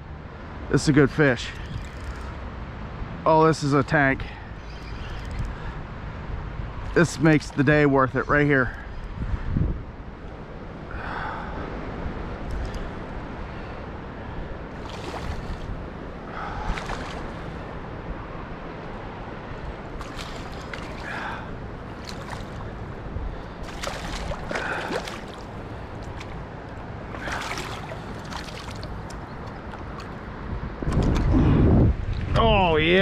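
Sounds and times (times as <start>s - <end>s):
creek water running: 0.7s - 2.4s, 14.7s - 17.9s, 19.2s - 30.4s
fish splashing at surface: 14.8s - 15.7s, 20.0s - 22.8s, 23.6s - 26.4s, 27.1s - 30.1s.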